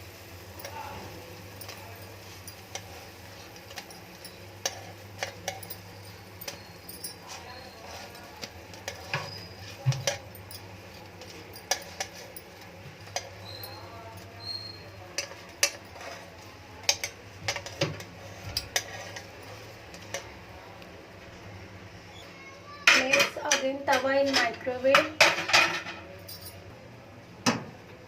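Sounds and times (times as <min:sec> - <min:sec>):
utensil clinking on metal pan: 0:01.5 - 0:20.2, 0:22.9 - 0:26.5.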